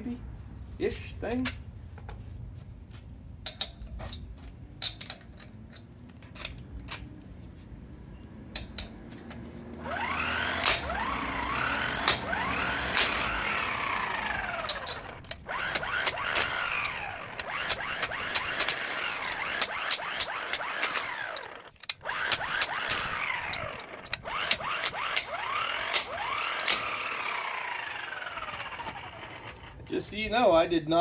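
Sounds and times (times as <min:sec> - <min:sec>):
electric impact wrench: 0:09.8 - 0:29.9.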